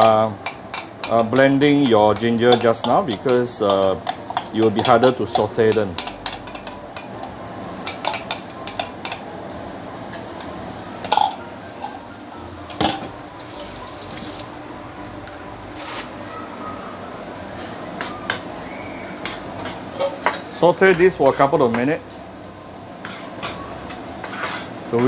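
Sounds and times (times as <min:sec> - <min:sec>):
spatula scraping a pan: 0:23.0 - 0:23.3, 0:24.2 - 0:24.8.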